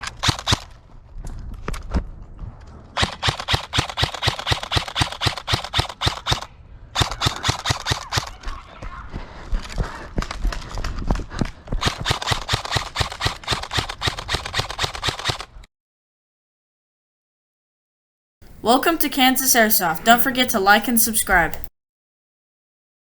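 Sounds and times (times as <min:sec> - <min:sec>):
airsoft rifle firing: 0:03.0 - 0:08.5.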